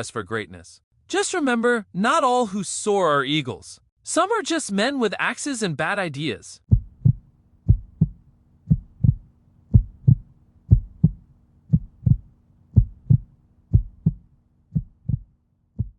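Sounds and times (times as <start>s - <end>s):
faint steady hum: 6.7s - 15.9s
heartbeat thumps: 6.7s - 15.9s.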